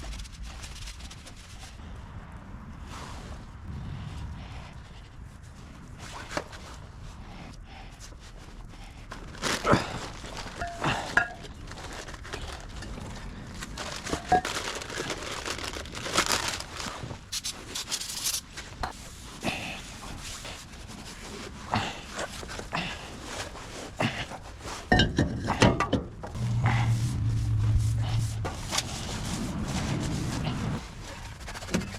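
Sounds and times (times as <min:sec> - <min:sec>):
low steady hum: 0:26.0 - 0:31.5.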